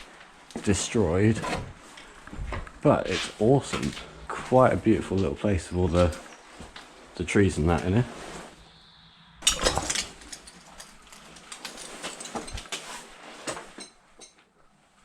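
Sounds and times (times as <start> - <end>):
broken glass crunching and clinking: 9.4 - 12.9.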